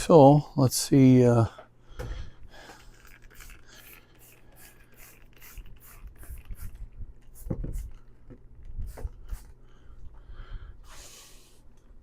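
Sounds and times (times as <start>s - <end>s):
spray cleaner hissing strokes: 3.3s - 6.7s.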